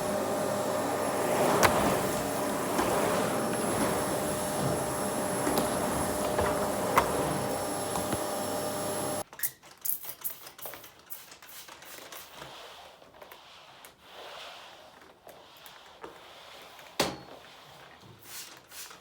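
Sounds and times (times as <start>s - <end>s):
household appliance humming: 0.0s - 9.2s.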